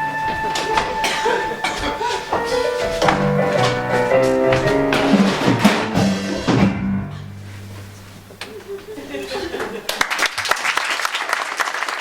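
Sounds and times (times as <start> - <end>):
held instrument notes: 0.0 - 9.0
regular drum hits: 0.4 - 8.4.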